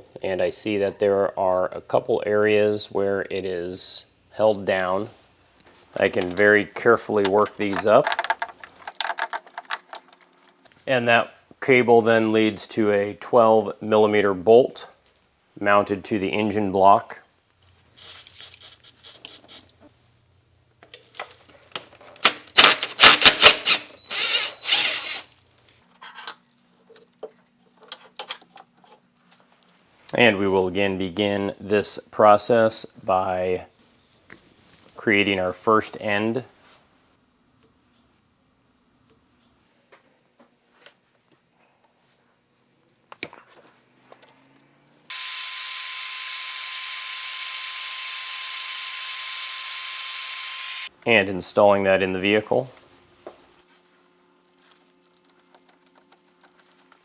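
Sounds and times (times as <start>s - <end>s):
hand tools clicking on cable: 5.9s - 10.7s
socket ratchet ratcheting: 6.0s - 6.6s, 7.2s - 10.7s
small electric blower whining: 45.1s - 50.9s.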